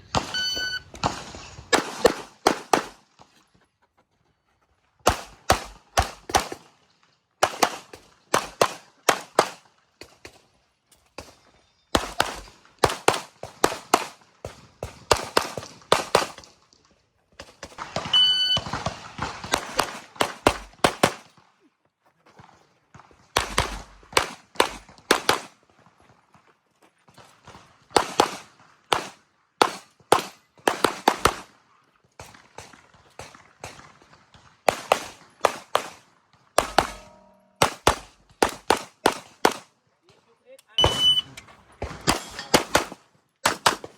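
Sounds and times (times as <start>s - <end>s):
shot timer beep: 0.3s - 0.9s, 18.2s - 18.6s, 40.8s - 41.4s
handgun shots: 36.6s - 39.6s.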